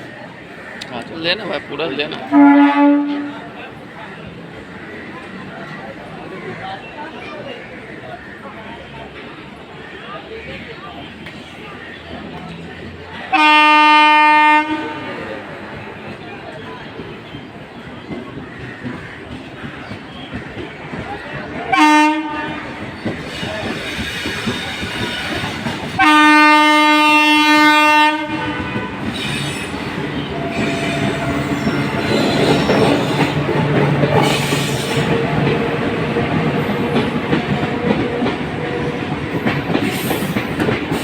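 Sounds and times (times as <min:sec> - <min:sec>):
train horn blasts: 0:02.3 - 0:03.5, 0:13.3 - 0:15.2, 0:21.7 - 0:22.8, 0:25.9 - 0:33.5
train rumbling: 0:11.0 - 0:41.0.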